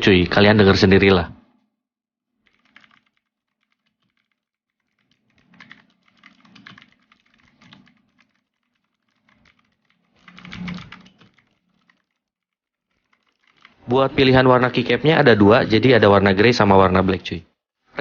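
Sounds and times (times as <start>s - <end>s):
clicky mechanical keyboard typing: 2.4s - 14.7s.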